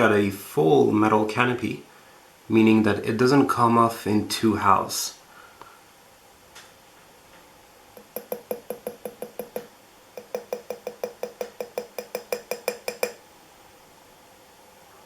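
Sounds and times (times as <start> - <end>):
rapid tapping on metal: 8.0 - 13.2.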